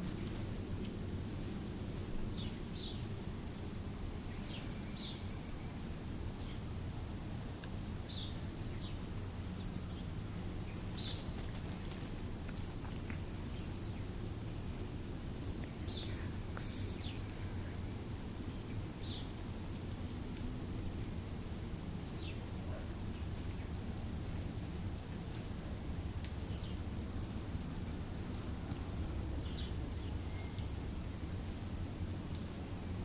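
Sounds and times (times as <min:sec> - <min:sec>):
bird chirping: 0:09.7 - 0:12.0, 0:29.4 - 0:30.8.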